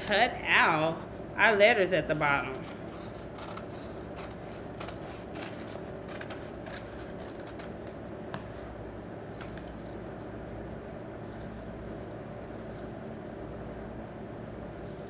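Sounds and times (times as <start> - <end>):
steady low hum: 0.0 - 15.0
scissors snipping paper: 3.1 - 7.9.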